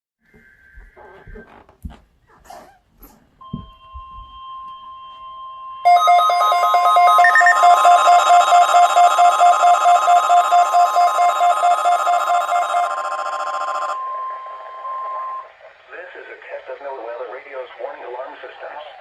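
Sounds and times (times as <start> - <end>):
pulsed beeping alarms: 3.4 - 15.8
steady warning alarm tone: 3.4 - 15.8.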